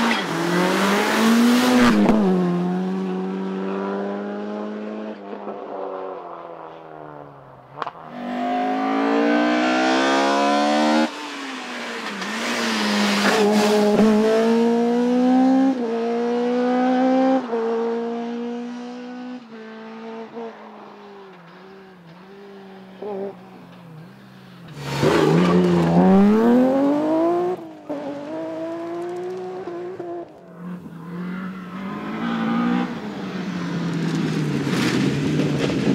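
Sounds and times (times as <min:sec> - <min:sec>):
rally car accelerating past: 0:24.8 - 0:35.9.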